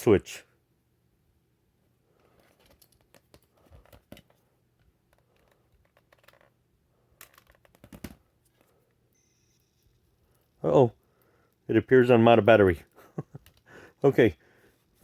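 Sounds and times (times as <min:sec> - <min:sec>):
small clicks and rustles at workbench: 0:02.2 - 0:10.6, 0:13.3 - 0:13.7.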